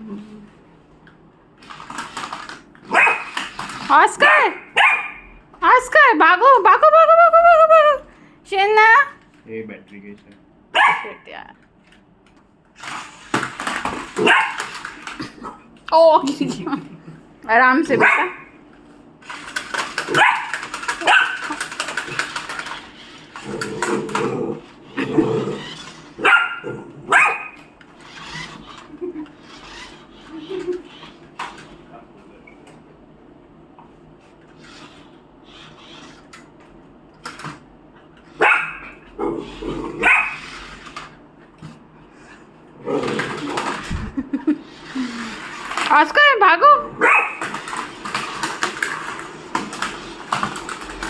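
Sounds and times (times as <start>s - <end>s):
dog barking: 2.9s - 3.3s, 4.2s - 5.3s, 10.7s - 11.2s, 18.0s - 18.5s, 20.1s - 21.4s, 26.2s - 27.6s, 38.4s - 38.9s, 40.0s - 40.4s, 47.0s - 47.4s.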